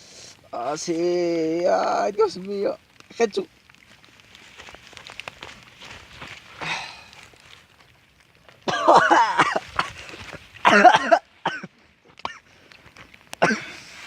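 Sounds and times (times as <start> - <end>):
person coughing and hacking: 8.7 - 9.9, 10.6 - 12.4, 13.4 - 13.8.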